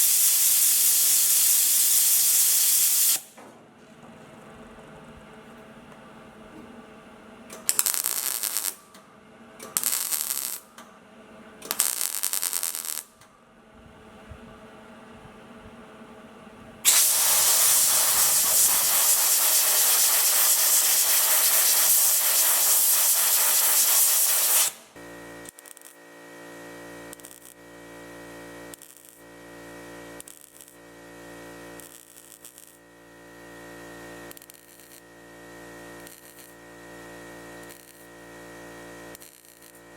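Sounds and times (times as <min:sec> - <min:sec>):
loud hissing: 0:16.9 - 0:24.8.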